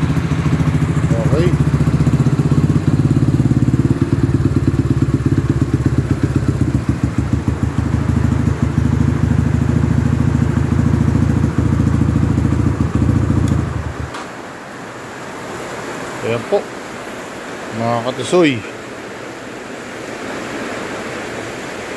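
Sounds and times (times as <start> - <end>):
motorcycle engine idling: 0.0 - 14.2.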